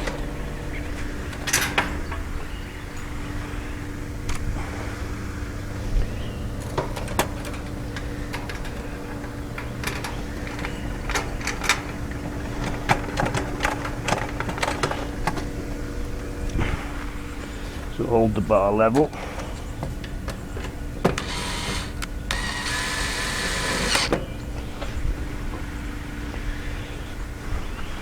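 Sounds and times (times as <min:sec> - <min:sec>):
steady low hum: 0:20.8 - 0:24.5.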